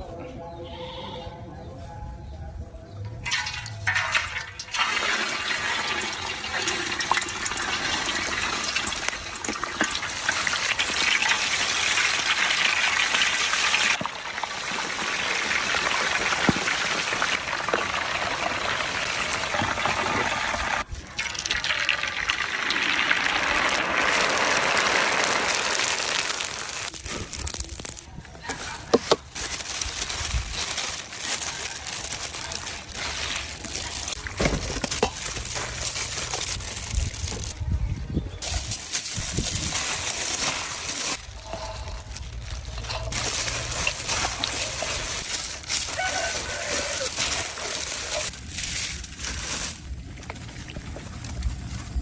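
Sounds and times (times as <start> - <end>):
water running from a tap: 4.0 - 15.1.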